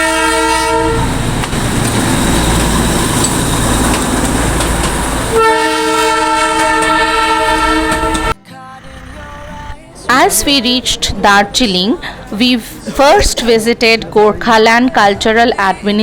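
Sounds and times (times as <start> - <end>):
train horn: 0.0 - 1.1, 5.3 - 8.4
train rumbling: 0.0 - 13.4.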